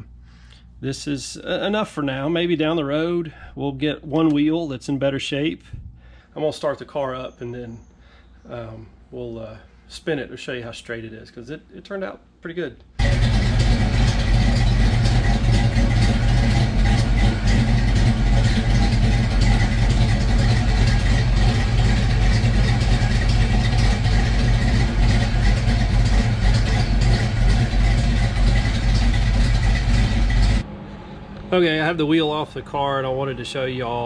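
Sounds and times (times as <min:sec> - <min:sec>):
loud car engine idling: 0:13.0 - 0:34.0.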